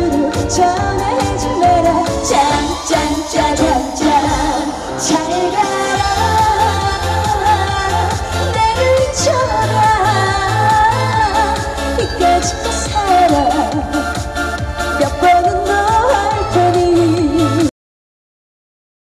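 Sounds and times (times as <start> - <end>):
backing track with pulsing bass: 0.0 - 17.7
person singing: 0.0 - 17.7.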